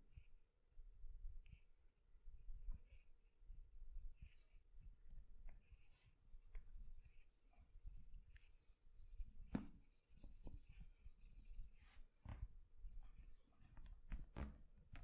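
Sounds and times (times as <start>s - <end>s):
hands rubbing skin and hair: 4.0s - 15.0s.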